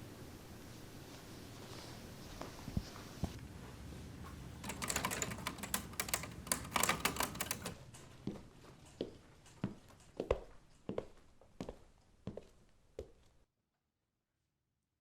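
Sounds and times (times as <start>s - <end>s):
typewriter typing: 4.5s - 7.9s.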